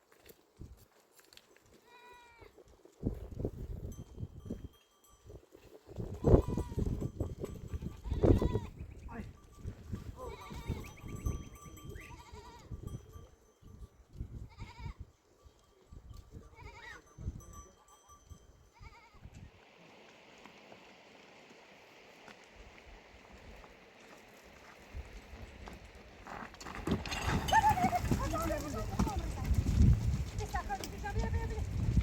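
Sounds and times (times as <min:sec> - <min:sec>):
flock bleating: 0:07.9 - 0:08.7, 0:10.2 - 0:11.2, 0:11.9 - 0:12.9, 0:16.5 - 0:17.1, 0:18.7 - 0:19.2.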